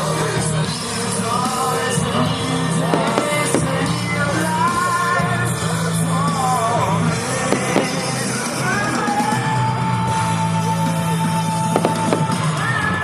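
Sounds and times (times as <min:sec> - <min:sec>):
short cracks: 0:02.9 - 0:04.0, 0:07.6 - 0:08.4, 0:11.8 - 0:12.4.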